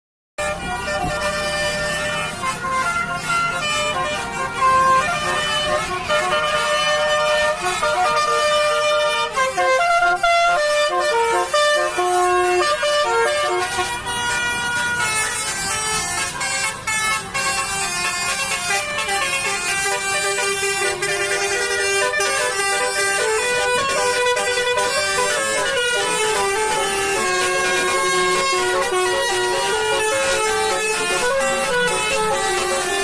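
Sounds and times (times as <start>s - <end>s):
bus musical horn playing a tune: 0.4s - 33.0s.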